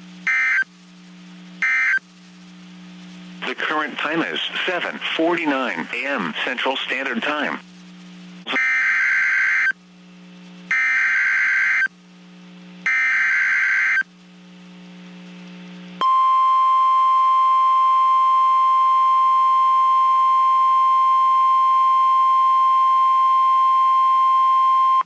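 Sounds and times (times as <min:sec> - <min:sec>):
harsh digital data squawks: 0:00.2 - 0:00.7, 0:01.6 - 0:02.0, 0:08.5 - 0:09.8, 0:10.7 - 0:11.9, 0:12.8 - 0:14.1
steady warning alarm tone: 0:00.2 - 0:00.7, 0:01.6 - 0:02.0, 0:08.5 - 0:09.8, 0:10.7 - 0:11.9, 0:12.8 - 0:14.1.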